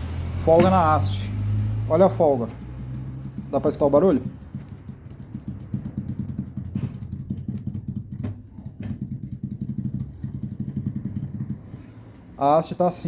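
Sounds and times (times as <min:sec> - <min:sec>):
shock absorber clunking and rattling: 0:00.4 - 0:12.3.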